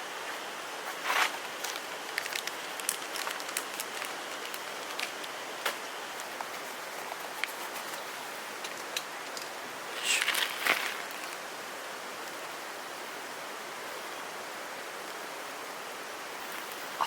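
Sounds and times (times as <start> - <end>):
wood fire crackling and popping: 1.0 - 11.4.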